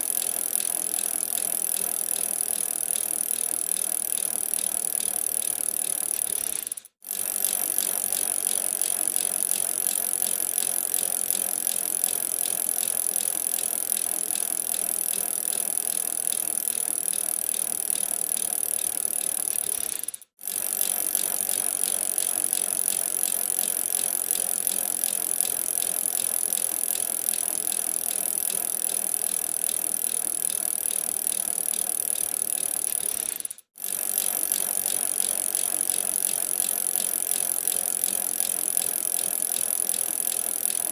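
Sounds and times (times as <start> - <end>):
bicycle chain rattling and ticking: 0.0 - 40.9.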